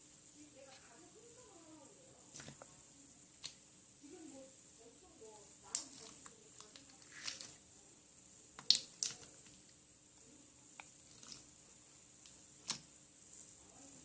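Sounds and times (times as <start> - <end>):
slime squishing: 2.3 - 3.6, 5.6 - 7.7, 8.5 - 9.8, 10.7 - 13.0.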